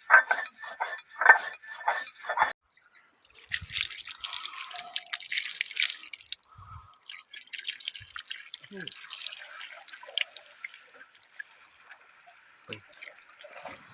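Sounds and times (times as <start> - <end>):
water splashing and dripping: 3.1 - 13.9
person talking: 8.6 - 9.0, 12.7 - 13.0.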